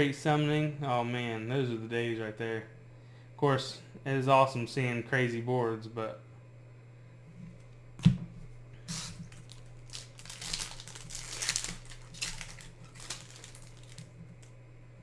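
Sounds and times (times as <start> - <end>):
foil wrapper crinkling: 8.9 - 14.5.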